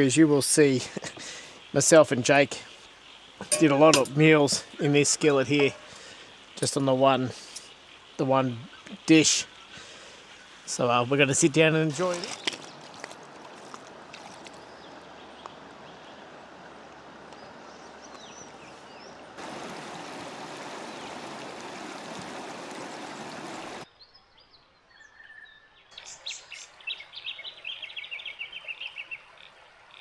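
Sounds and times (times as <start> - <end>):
birdcalls: 2.7 - 10.6
river water rushing: 19.2 - 23.8.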